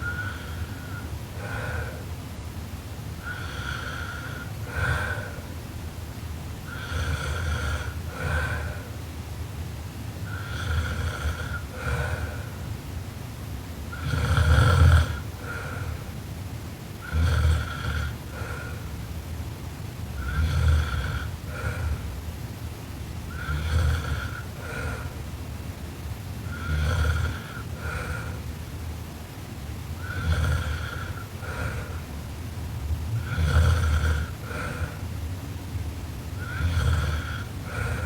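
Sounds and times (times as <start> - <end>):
woman snoring loudly: 0.0 - 2.0, 3.2 - 5.5, 6.6 - 9.0, 10.2 - 12.6, 13.9 - 16.1, 17.0 - 18.9, 20.2 - 22.2, 23.3 - 25.2, 26.4 - 28.5, 30.0 - 32.1, 33.1 - 35.1, 36.4 - 38.0.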